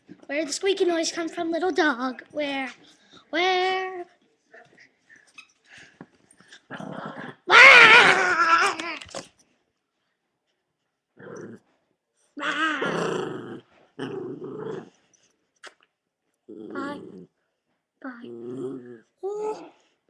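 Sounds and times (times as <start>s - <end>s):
small dog growling: 6.5s - 8.3s, 11.2s - 11.6s, 12.4s - 15.0s, 16.5s - 17.3s, 18.1s - 19.1s.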